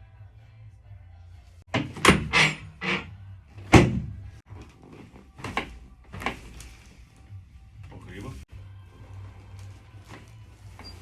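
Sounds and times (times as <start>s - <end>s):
thuds and cracks of spinal adjustment: 1.7s - 7.2s, 9.2s - 11.0s.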